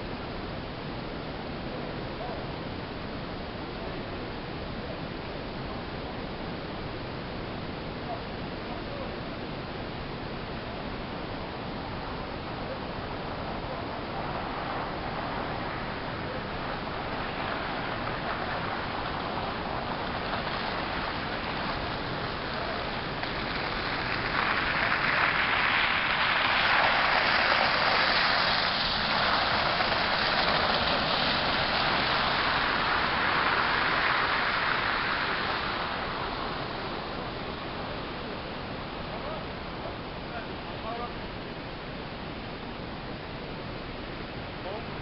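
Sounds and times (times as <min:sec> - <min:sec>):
electric snow shovel throwing snow: 0:16.9 - 0:36.7.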